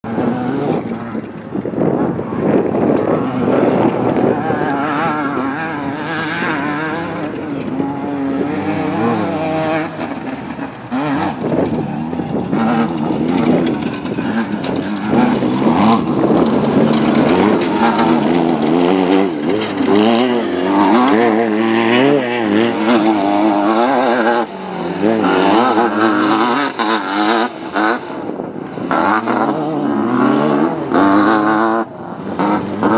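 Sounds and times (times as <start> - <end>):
race car engine revving: 0.0 - 32.9.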